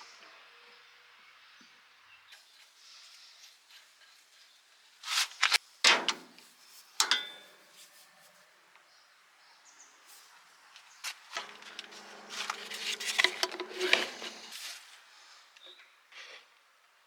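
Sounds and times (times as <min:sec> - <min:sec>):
metal tools knocking and clinking: 0:07.0 - 0:07.5.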